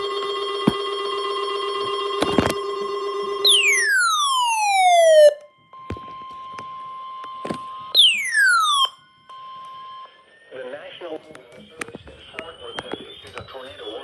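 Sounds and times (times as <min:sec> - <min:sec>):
steady alarm tone: 0:03.5 - 0:05.4, 0:08.0 - 0:09.0
siren-like falling sweeps: 0:03.5 - 0:05.5, 0:08.0 - 0:09.0.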